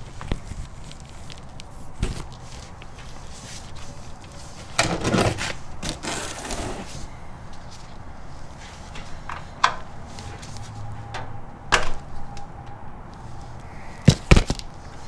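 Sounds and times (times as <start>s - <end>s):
scraping and rustling: 0.0s - 11.1s.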